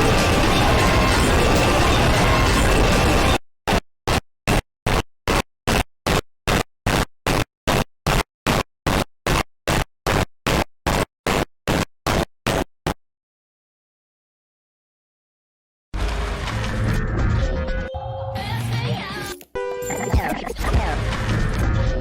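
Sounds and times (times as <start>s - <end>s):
pulsing electronic static: 0.0s - 4.2s, 19.8s - 22.0s.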